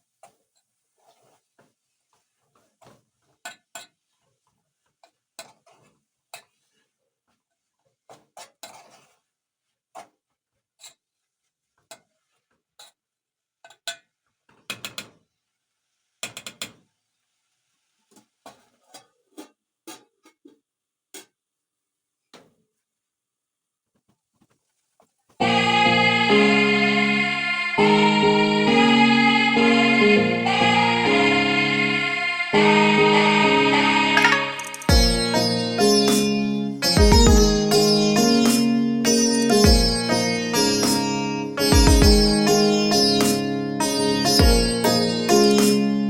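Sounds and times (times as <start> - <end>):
kitchen utensils clinking: 34.2 - 34.9.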